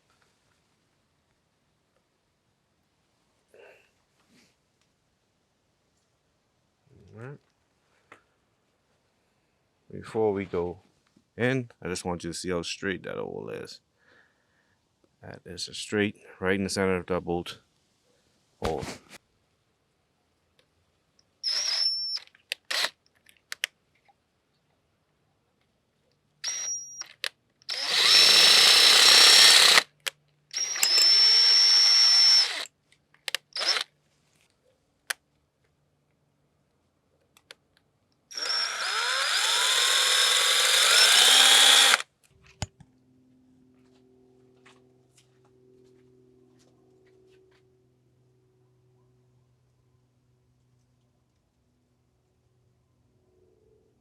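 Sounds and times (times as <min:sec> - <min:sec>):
power drill boring: 0:21.4 - 0:22.9, 0:26.4 - 0:32.7, 0:33.6 - 0:33.8, 0:38.3 - 0:42.0.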